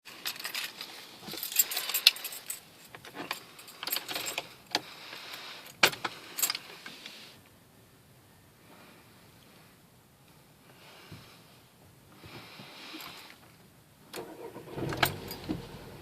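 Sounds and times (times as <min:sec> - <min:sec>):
keys jangling and clinking: 0:00.2 - 0:04.4.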